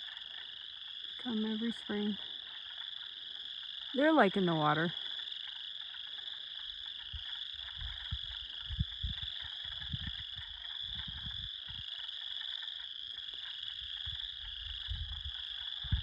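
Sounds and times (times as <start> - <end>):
frogs chorus calling: 0.0 - 16.0
wind buffeting microphone: 7.0 - 12.0, 13.8 - 16.0.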